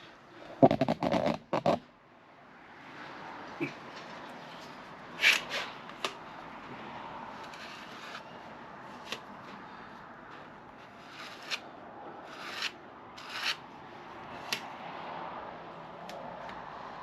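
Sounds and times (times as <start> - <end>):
hand rubbing a hard surface: 12.3 - 13.6.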